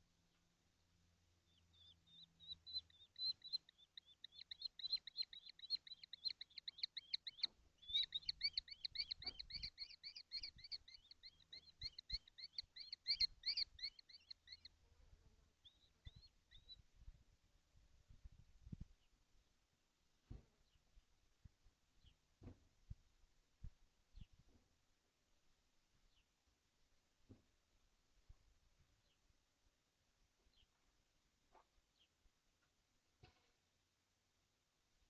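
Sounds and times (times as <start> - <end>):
kestrel rapid high calls: 1.6 - 14.7.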